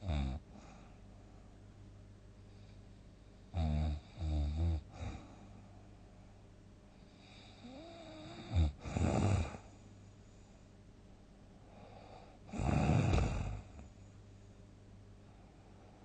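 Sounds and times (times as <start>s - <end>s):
person snoring heavily: 3.5s - 5.4s, 7.3s - 9.7s, 12.0s - 13.8s.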